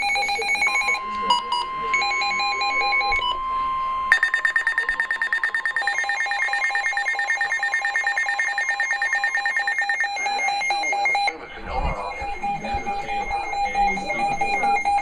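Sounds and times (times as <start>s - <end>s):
pulsing electronic alarm tone: 0.0s - 15.0s
steady alert tone: 4.1s - 15.0s.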